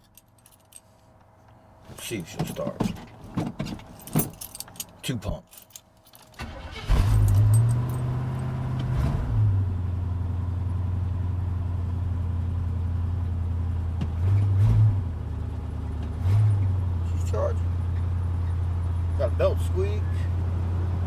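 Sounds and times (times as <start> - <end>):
engine cranking: 6.1 - 8.1
car engine idling: 16.8 - 21.0.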